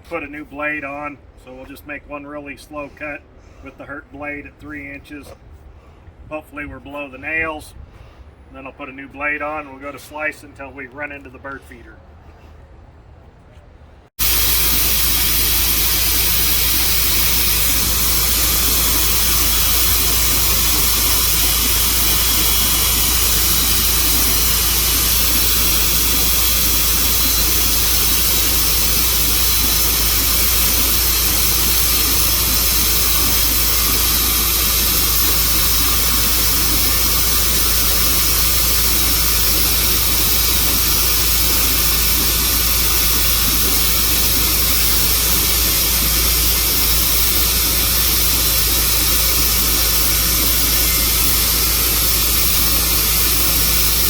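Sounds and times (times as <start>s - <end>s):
band sawmill cutting wood: 14.2s - 54.0s.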